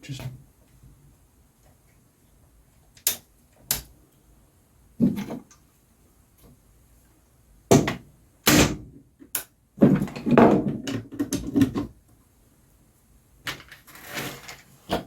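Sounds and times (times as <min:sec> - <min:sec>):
objects clattering and rattling: 0:09.8 - 0:11.9, 0:13.4 - 0:15.0.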